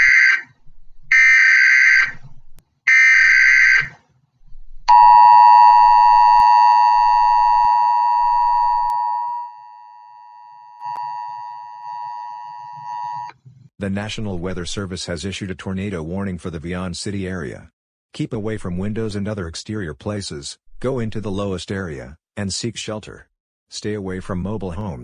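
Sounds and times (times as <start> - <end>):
two-tone attention signal: 4.9 - 13.3.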